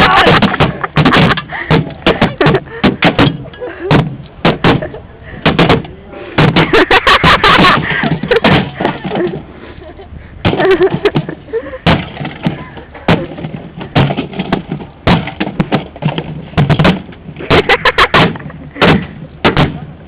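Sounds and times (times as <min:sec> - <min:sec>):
refrigerator being smashed: 0:06.4 - 0:09.3, 0:10.4 - 0:19.8.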